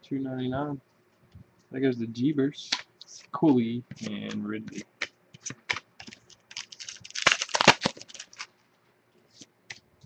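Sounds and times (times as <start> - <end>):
trading cards clicking and rustling: 2.6 - 8.5.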